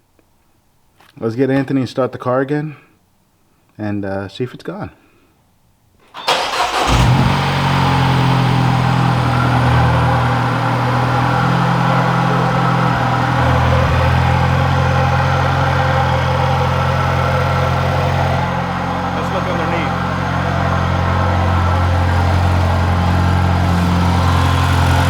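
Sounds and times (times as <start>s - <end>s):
car engine starting and idling: 6.0s - 25.0s.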